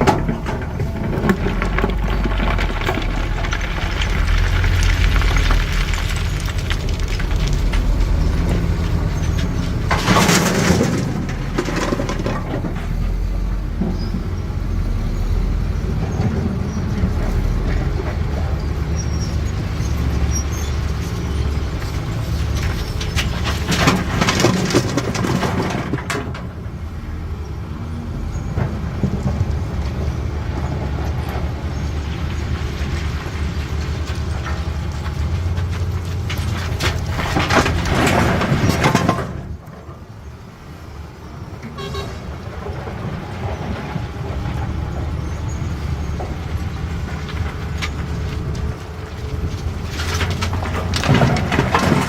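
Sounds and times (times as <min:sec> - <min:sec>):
stone crashing and scraping: 0:00.0 - 0:13.2, 0:22.4 - 0:26.4, 0:32.8 - 0:39.6, 0:46.7 - 0:52.0
excavator diesel engine running: 0:00.0 - 0:52.0.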